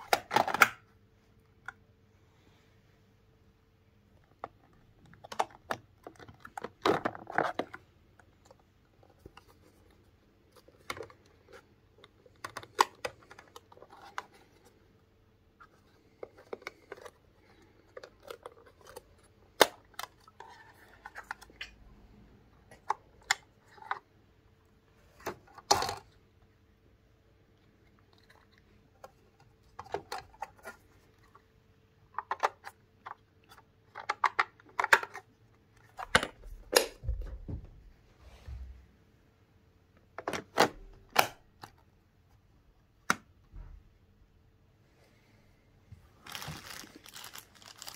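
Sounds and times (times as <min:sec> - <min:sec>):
plastic parts clicking: 0:04.2 - 0:09.5, 0:10.5 - 0:14.7, 0:15.6 - 0:21.8, 0:32.1 - 0:37.0
packaging rustling: 0:46.2 - 0:47.9.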